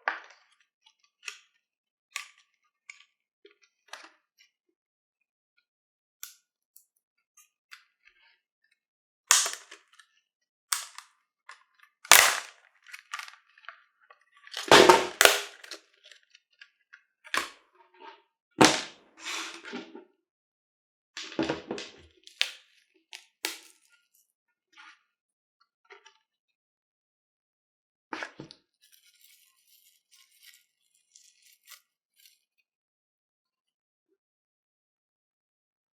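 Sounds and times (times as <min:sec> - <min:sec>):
packaging cracking and crinkling: 0:12.1 - 0:13.4, 0:14.6 - 0:15.8.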